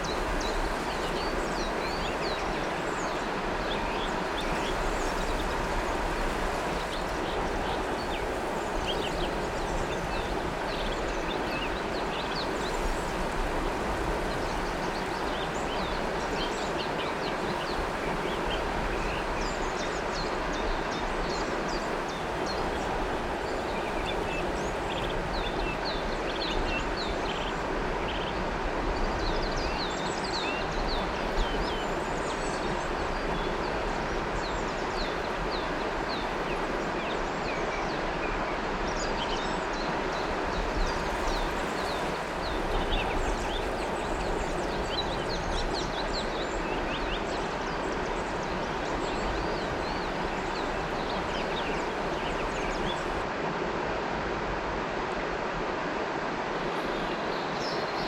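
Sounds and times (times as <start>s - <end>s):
river water rushing: 0.0s - 58.0s
birds chirping: 39.7s - 53.2s.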